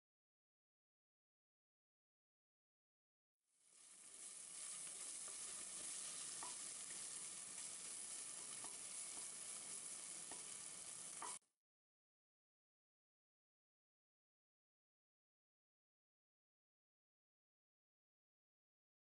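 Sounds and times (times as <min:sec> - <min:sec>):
masala sizzling in hot oil: 0:03.5 - 0:11.4.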